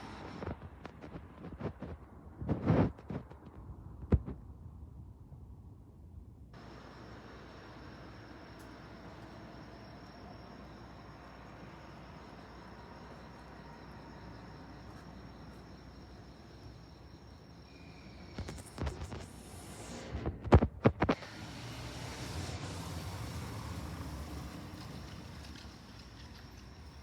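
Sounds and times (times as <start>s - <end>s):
crickets chirping: 6.6s - 27.0s
vehicle rolling noise: 6.6s - 27.0s.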